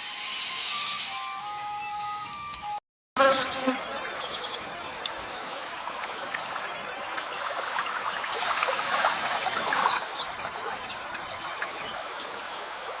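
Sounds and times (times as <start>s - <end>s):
steady hiss: 0.0s - 1.5s
birds chirping: 3.2s - 13.0s.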